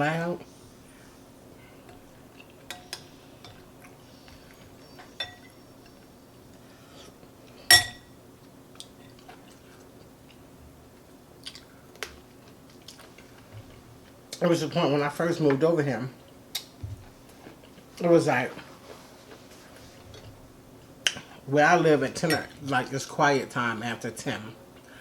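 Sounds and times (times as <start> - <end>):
person chewing food: 1.1 - 7.6, 8.4 - 14.4, 16.2 - 18.0, 18.8 - 21.2
spoon clinking against bowl: 2.7 - 3.6, 4.8 - 5.6, 7.7 - 8.1.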